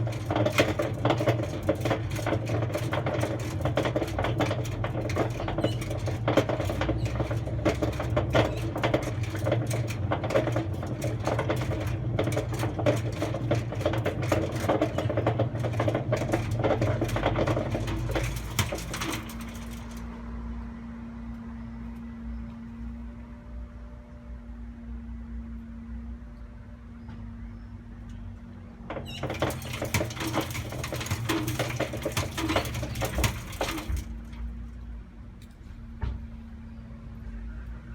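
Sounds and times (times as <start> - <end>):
toy rattling inside washing machine: 0.0 - 20.2, 28.8 - 34.5
washing machine rumble: 0.0 - 20.8, 28.1 - 35.0.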